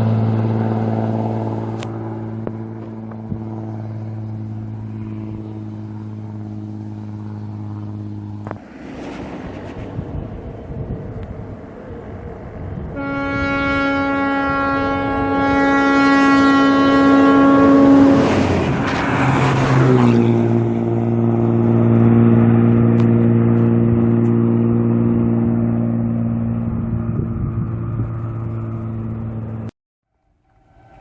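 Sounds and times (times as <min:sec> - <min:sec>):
rush of noise: 0:00.0 - 0:14.2, 0:16.3 - 0:29.7
bus engine droning: 0:00.0 - 0:29.7
bus air horn: 0:13.0 - 0:18.9.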